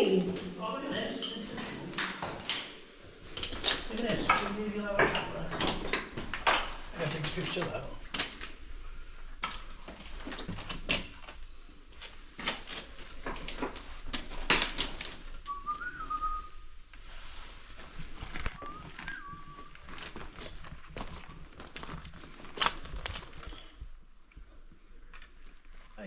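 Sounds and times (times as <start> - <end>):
person whistling: 15.5 - 16.6, 18.6 - 19.8.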